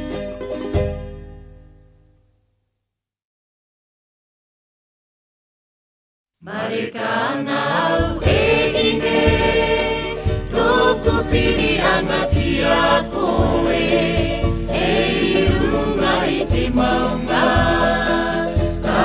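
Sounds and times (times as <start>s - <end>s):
choir singing: 6.4s - 19.0s
low bass beat: 8.2s - 19.0s.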